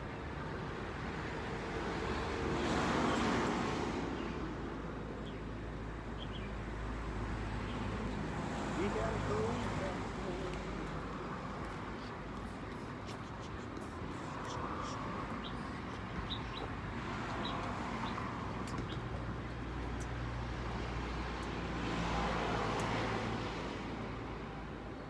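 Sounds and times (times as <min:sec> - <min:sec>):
road traffic: 0:00.0 - 0:25.0.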